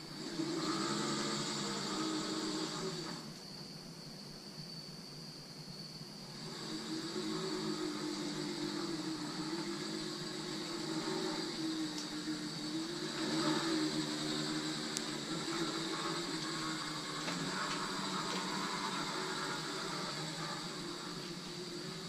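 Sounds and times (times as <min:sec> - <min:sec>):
electric motor whining: 0:00.0 - 0:03.4, 0:06.2 - 0:22.0
faint ticks: 0:10.4 - 0:12.4, 0:13.0 - 0:21.8.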